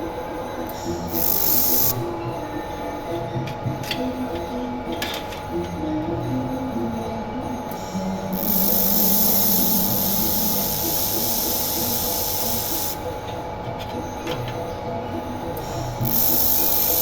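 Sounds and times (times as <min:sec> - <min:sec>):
machine hum: 0:00.8 - 0:02.0, 0:07.7 - 0:13.1, 0:15.6 - 0:17.0
laser welder hissing: 0:01.1 - 0:02.0, 0:08.4 - 0:13.0, 0:16.0 - 0:17.0.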